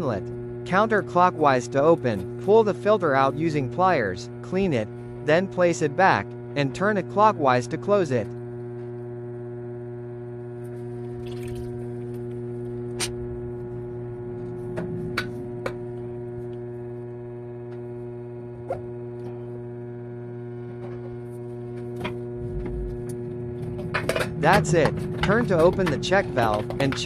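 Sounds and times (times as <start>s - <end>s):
electrical mains hum: 0.0s - 27.0s
sharp clicks and taps: 24.1s - 27.0s.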